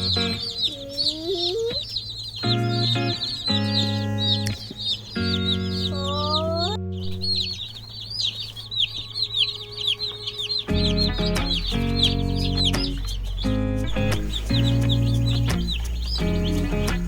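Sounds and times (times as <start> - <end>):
chicks peeping: 0.0 - 17.0
background music with held chords: 2.5 - 6.0, 9.3 - 17.0.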